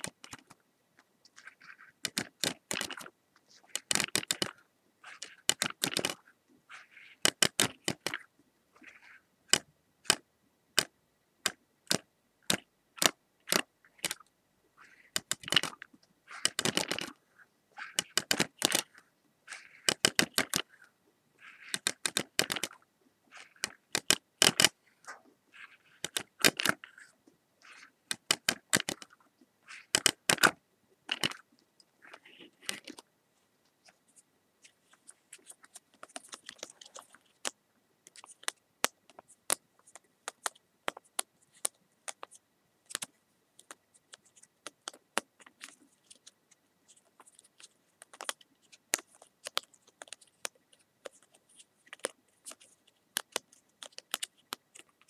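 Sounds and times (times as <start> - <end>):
sharp clicks and taps: 2.0 - 3.1, 7.2 - 8.2, 15.1 - 15.8, 16.4 - 17.1, 18.0 - 19.0, 19.8 - 20.7, 21.7 - 22.8, 23.4 - 24.8, 26.0 - 26.9, 28.1 - 29.2, 29.9 - 31.4, 34.6 - 55.0.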